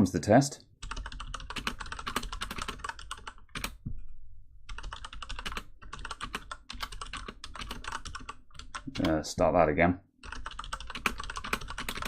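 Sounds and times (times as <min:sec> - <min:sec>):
fast typing on mechanical keyboard: 0:00.8 - 0:03.8, 0:04.7 - 0:09.2, 0:10.2 - 0:12.0.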